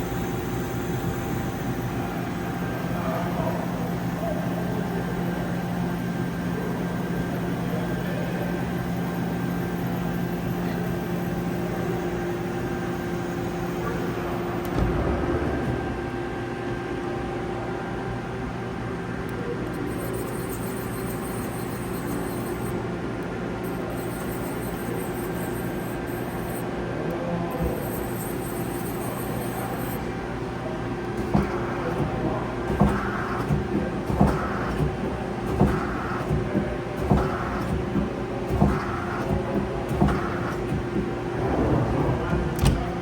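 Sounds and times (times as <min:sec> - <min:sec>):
lathe humming: 0:00.0 - 0:16.7.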